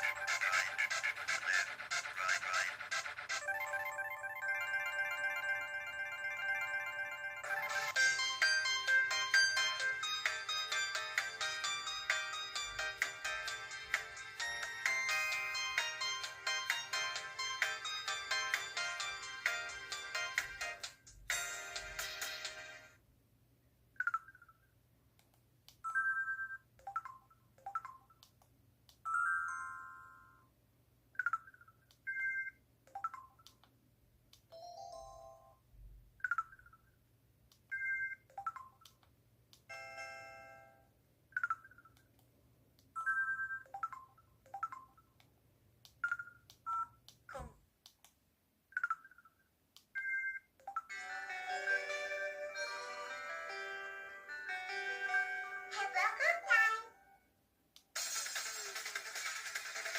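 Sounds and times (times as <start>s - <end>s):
synthesized phone beeps and chimes: 3.4s - 18.8s, 25.8s - 28.2s, 29.1s - 30.4s, 31.2s - 33.4s, 43.0s - 45.1s, 50.0s - 51.0s.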